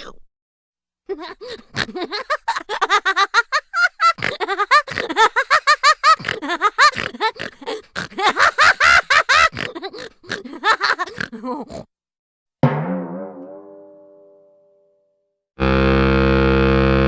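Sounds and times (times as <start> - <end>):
cartoon high-pitched giggling: 1.1 - 11.9.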